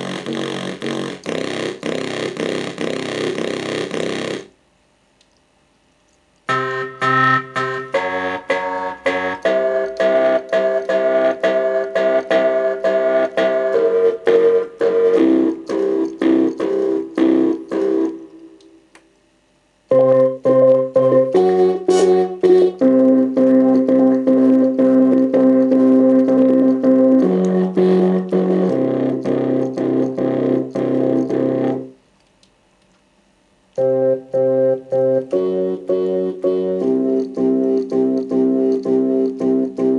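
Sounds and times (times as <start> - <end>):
synth bass line: 0.0 - 4.5, 6.5 - 18.6, 19.9 - 32.0, 33.8 - 39.9
pulsing keyboard chords: 6.4 - 18.8, 19.9 - 32.0, 33.8 - 39.9.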